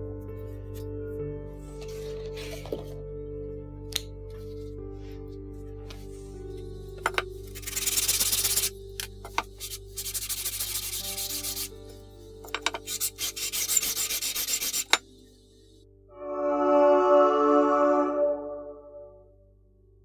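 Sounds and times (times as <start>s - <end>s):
soft background music: 0.0s - 20.0s
metal rubbing on abrasive: 7.0s - 15.2s.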